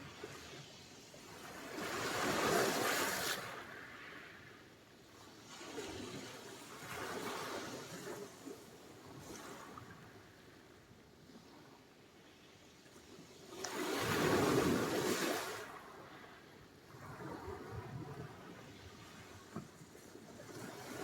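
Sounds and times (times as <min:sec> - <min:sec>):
sea waves washing in: 0:13.5 - 0:16.3.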